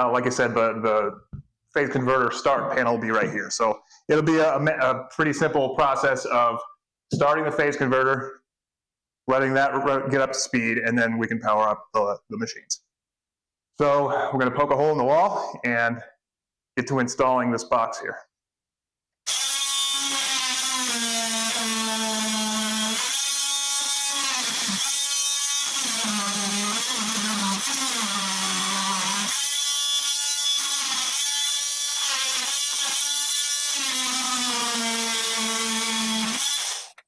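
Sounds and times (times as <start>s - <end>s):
power tool whining: 19.3s - 37.0s.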